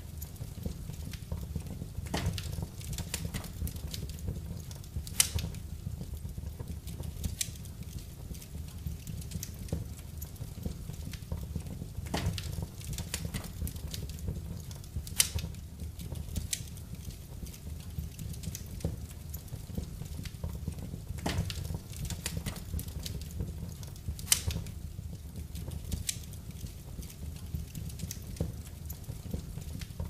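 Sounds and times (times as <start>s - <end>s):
low fire rumble: 0.0s - 30.0s
wood fire crackling and popping: 0.0s - 30.0s.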